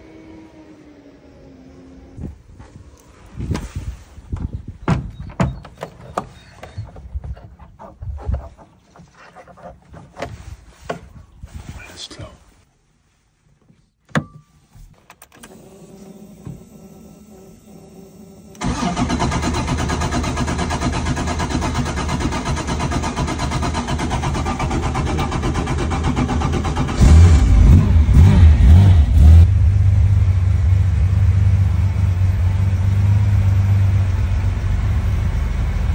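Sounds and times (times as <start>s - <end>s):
car engine starting and revving: 0.0s - 2.4s, 15.3s - 35.9s
ignition click: 15.0s - 19.4s.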